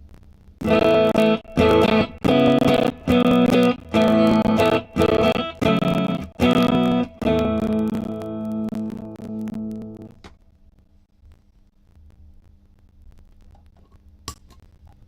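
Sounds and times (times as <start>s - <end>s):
distorted electric guitar chords: 0.6s - 10.2s.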